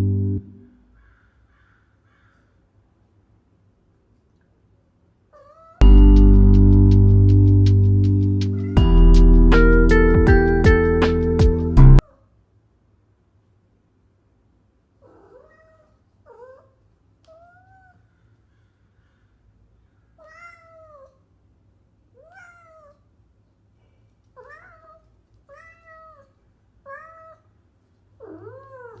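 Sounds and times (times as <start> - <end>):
cat meowing: 5.4 - 5.8, 15.0 - 18.0, 20.2 - 21.2, 22.2 - 23.1, 24.4 - 27.5, 28.2 - 29.0.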